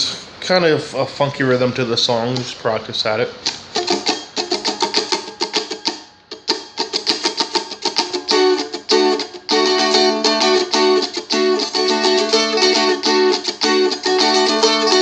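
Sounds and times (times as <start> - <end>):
strumstick strumming: 3.4 - 15.0.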